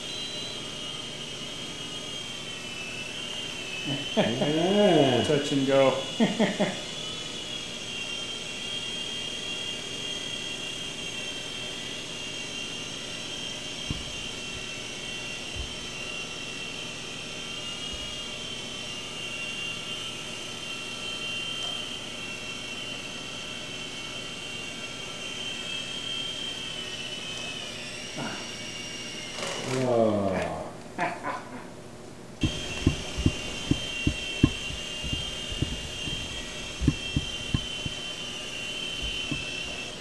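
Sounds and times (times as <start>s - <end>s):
rc helicopter rotor whine: 0.0s - 30.2s, 32.4s - 40.0s
faint low knocks: 32.4s - 38.0s.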